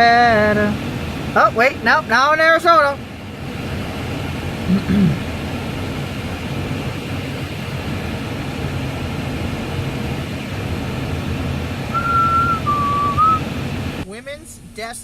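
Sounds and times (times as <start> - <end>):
car engine and road rumble: 0.0 - 14.2
person whistling: 11.9 - 13.4.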